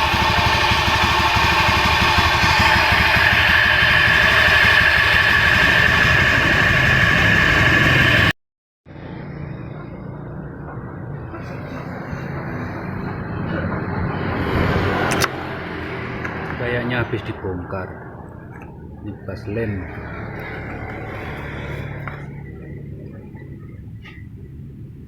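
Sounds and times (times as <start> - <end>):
scooter engine running roughly: 0.0 - 8.4
high whine: 0.0 - 24.6.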